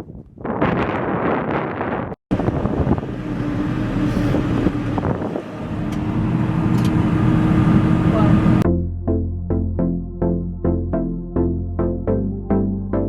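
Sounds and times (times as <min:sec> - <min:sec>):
vehicle engine running: 0:02.3 - 0:08.6.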